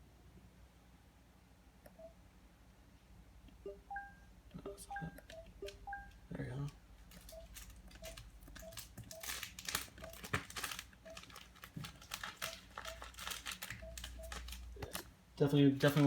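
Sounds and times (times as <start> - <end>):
soft short beeps: 3.7 - 6.2
crinkling and rustling handling: 6.4 - 15.1, 15.7 - 16.0.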